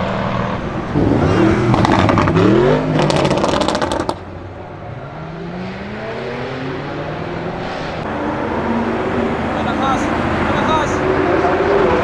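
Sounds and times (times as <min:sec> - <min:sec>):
exhaust crackles: 0:08.0 - 0:11.4
car engine accelerating hard: 0:08.0 - 0:11.6.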